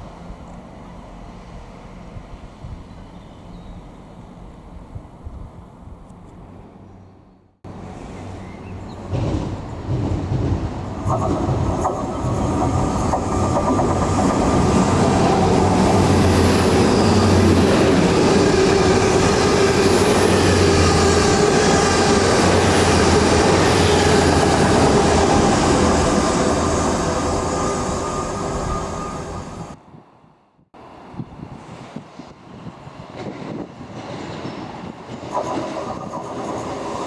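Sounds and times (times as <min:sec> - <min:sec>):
train wheels rumbling on rail: 0:07.7 - 0:29.8, 0:30.8 - 0:37.0.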